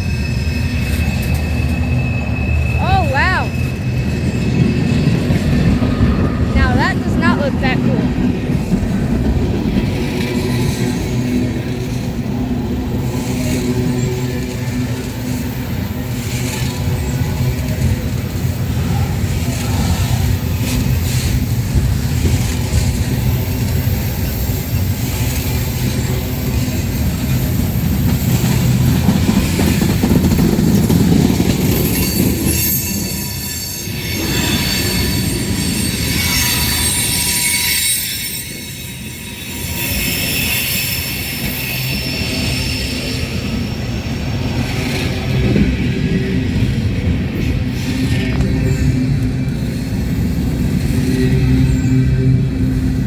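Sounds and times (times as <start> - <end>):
steel wheel squeal: 0.0 - 6.7, 12.9 - 46.8
train wheels rumbling and clacking: 0.0 - 53.0.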